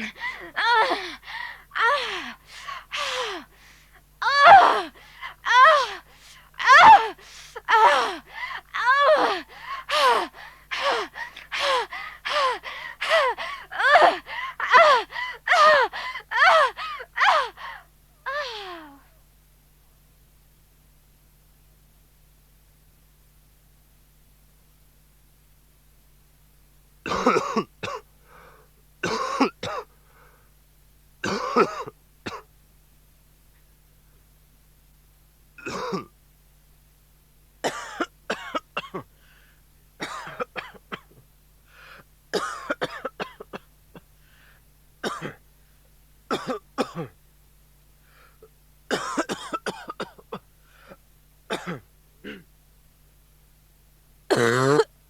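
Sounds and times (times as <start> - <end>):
person coughing: 27.1 - 28.0, 29.0 - 29.9, 31.2 - 32.5, 35.6 - 36.1, 37.6 - 39.1, 40.0 - 41.1, 42.4 - 43.7, 45.0 - 45.4, 46.3 - 47.2, 48.9 - 50.3, 50.9 - 52.5, 54.3 - 54.9.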